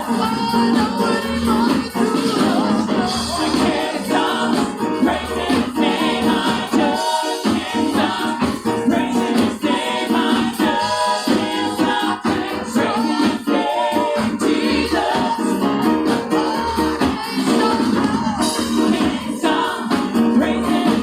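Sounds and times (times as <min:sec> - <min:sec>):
choir singing gospel: 0:00.0 - 0:21.0
instrumental accompaniment: 0:00.0 - 0:21.0.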